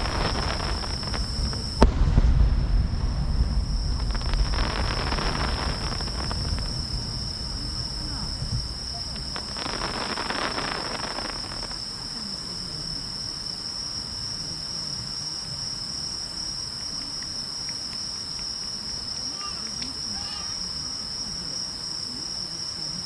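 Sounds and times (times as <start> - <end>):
firework crackling: 0.0 - 12.3
insects chirring: 0.0 - 23.0.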